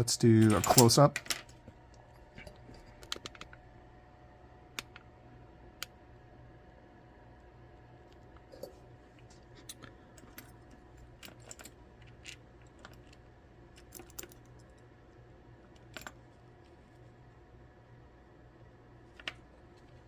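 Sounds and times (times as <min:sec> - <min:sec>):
faint steady hum: 0:00.0 - 0:20.0
clicks of small lock parts: 0:13.8 - 0:14.8.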